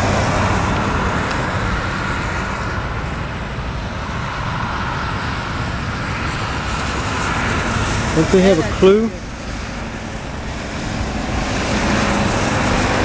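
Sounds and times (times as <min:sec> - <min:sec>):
highway traffic roar: 0:00.0 - 0:13.0.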